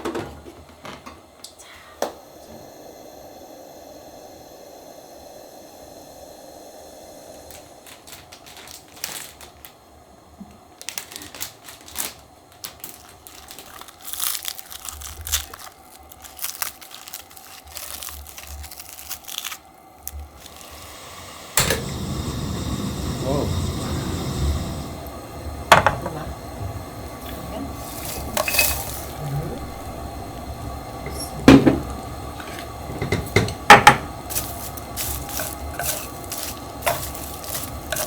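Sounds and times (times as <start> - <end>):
low hum: 2.2 - 8.0, 20.2 - 33.0
packaging crinkling and rustling: 7.5 - 9.9, 10.6 - 21.0, 27.8 - 30.5, 34.2 - 38.0.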